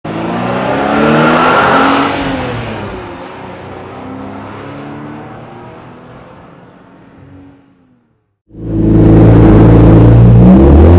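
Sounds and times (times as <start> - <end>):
race car engine revving: 8.5 - 10.9.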